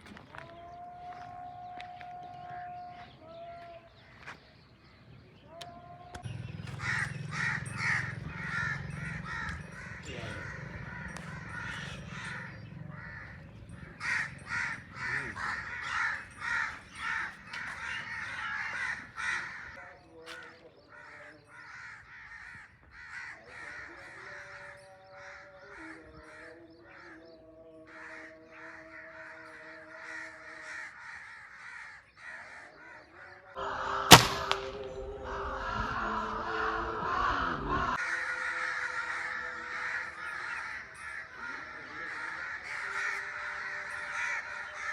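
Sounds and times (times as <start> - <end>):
crows cawing: 0.0 - 4.4, 5.5 - 44.9
gunshot crack: 33.8 - 35.6.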